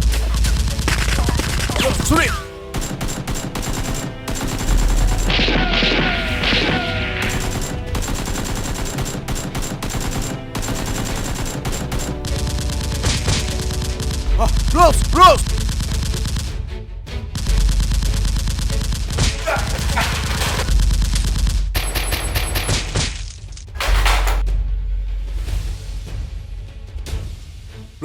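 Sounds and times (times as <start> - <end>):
automatic gunfire bursts: 0.6 - 14.2.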